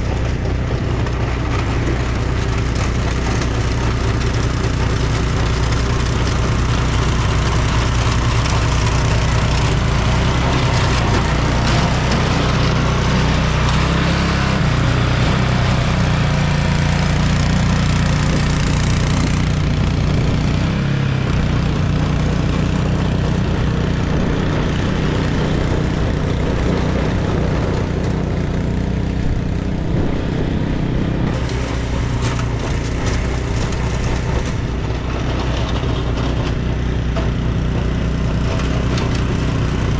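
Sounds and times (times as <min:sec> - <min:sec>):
vehicle engine running: 0:00.0 - 0:39.9.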